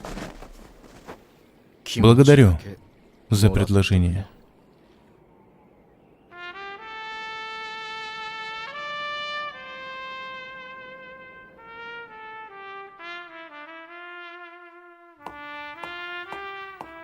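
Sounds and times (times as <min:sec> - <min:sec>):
slow melody of long notes: 0:06.2 - 0:17.0.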